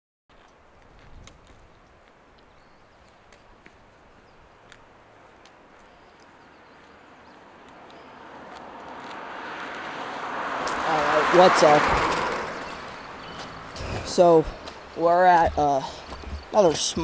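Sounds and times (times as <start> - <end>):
creek water rushing: 9.0 - 17.0.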